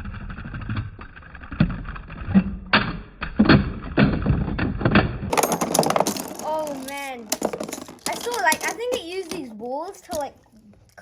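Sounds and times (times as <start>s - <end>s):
spinning tops clacking together: 5.3s - 9.5s.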